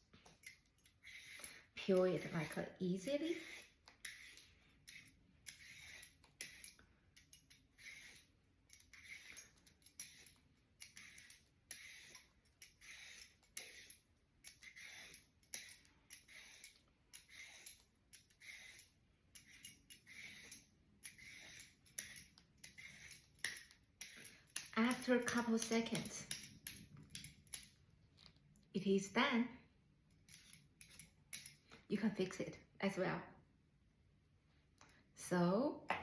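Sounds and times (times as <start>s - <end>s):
peeler scraping cucumber skin: 0.0s - 28.4s.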